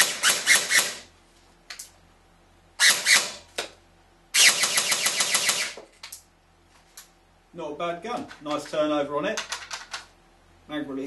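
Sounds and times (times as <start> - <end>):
airsoft rifle full-auto bursts: 4.4 - 5.8.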